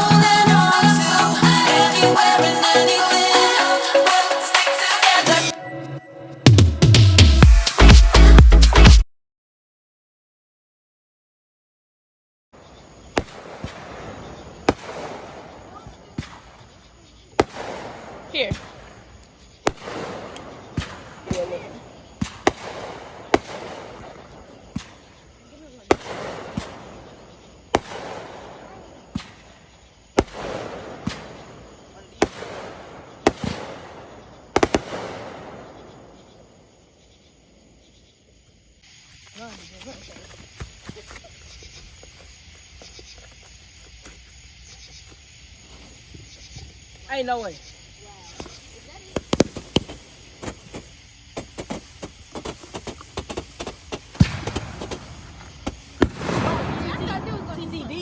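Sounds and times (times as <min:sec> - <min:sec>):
fireworks crackling hiss: 0:13.0 - 0:36.7, 0:45.6 - 0:58.0
fireworks banging: 0:13.1 - 0:16.7, 0:17.3 - 0:36.1, 0:48.4 - 0:58.0
firework fizzing hiss: 0:48.4 - 0:58.0
firework bang: 0:51.4 - 0:58.0.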